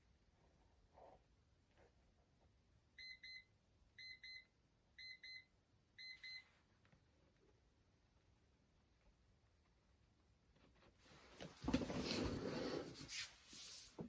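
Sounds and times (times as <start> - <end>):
timer alarm double beeps: 3.0 - 6.4.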